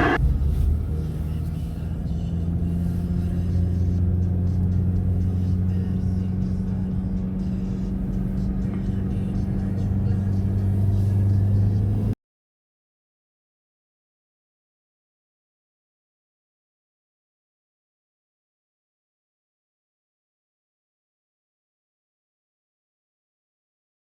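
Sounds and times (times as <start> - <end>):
vehicle engine humming: 0.0 - 12.2.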